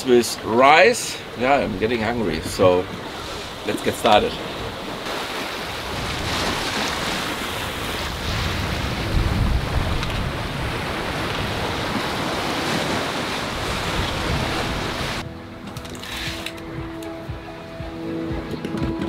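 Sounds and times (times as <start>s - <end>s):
sea water rushing: 0.0s - 18.6s
wind buffeting microphone: 1.2s - 15.4s.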